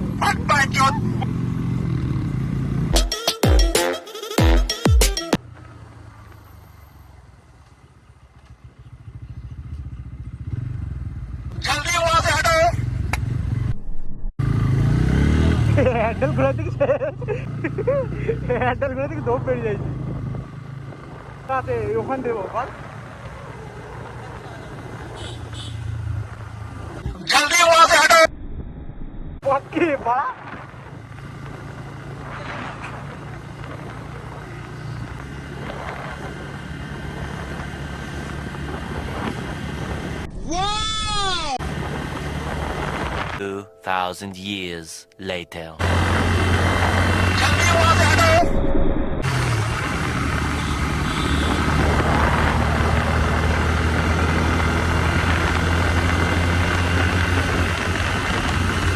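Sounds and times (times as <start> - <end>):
motorcycle engine running steadily: 7.1 - 13.6, 14.4 - 27.0, 30.8 - 40.2, 49.3 - 58.9.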